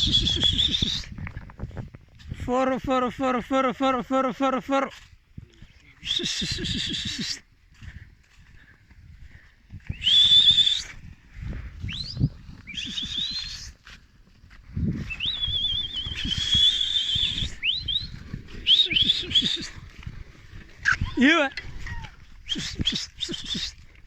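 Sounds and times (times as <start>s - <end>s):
person whistling: 0.0s - 1.1s, 6.0s - 7.4s, 9.9s - 11.0s, 11.8s - 13.7s, 15.1s - 19.7s, 22.5s - 23.8s
low scuffing and thudding: 13.7s - 16.5s.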